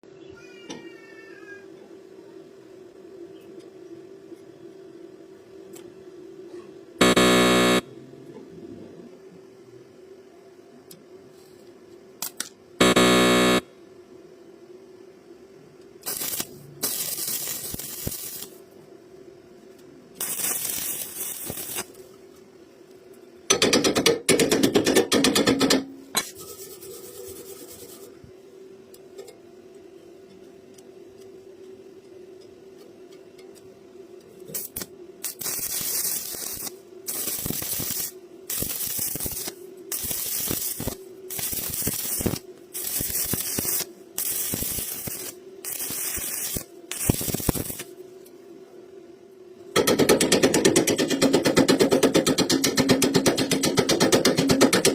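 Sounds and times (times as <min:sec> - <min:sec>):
steady hum: 0:02.3 - 0:23.5, 0:25.8 - 0:49.8
welding arc hissing: 0:07.0 - 0:07.8, 0:12.2 - 0:13.6, 0:16.0 - 0:18.7, 0:20.1 - 0:22.1, 0:26.2 - 0:28.2, 0:34.4 - 0:48.0.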